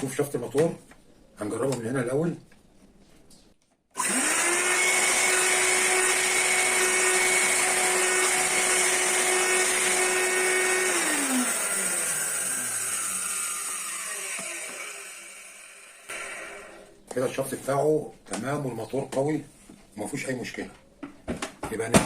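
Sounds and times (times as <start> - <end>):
vacuum cleaner motor whining: 4.0 - 16.8.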